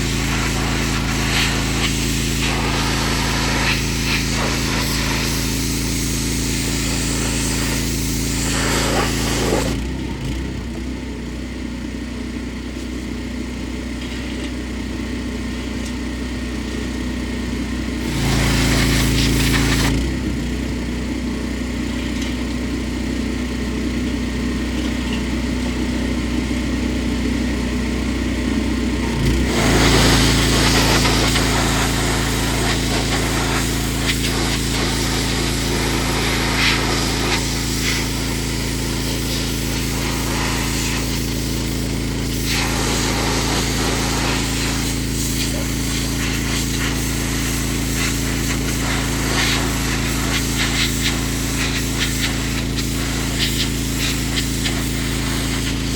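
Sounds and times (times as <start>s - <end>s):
water jet hissing: 0.0s - 9.8s, 18.0s - 20.0s, 29.5s - 55.9s
pressure washer engine running: 0.0s - 55.9s.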